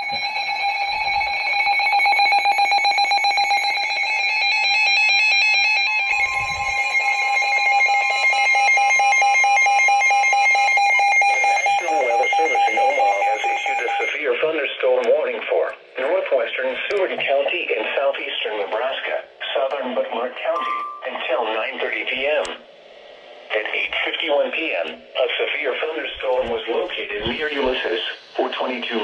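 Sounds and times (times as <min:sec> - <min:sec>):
pulsing electronic alarm tone: 0:00.0 - 0:14.2.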